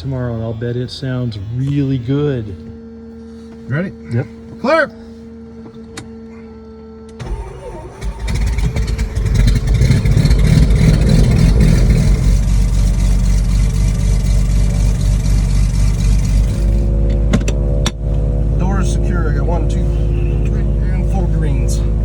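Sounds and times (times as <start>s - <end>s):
steady hum: 0.0s - 22.0s
engine starter cranking: 7.1s - 18.0s
aircraft piston engine running: 7.1s - 22.0s.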